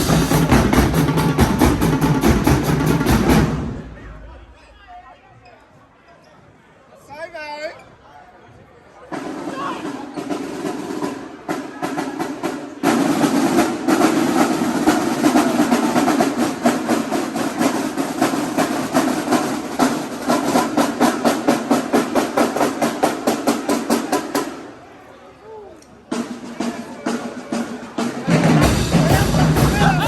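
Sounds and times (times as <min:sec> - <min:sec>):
marching drumline playing: 0:00.0 - 0:04.4, 0:09.1 - 0:24.8, 0:26.1 - 0:30.0.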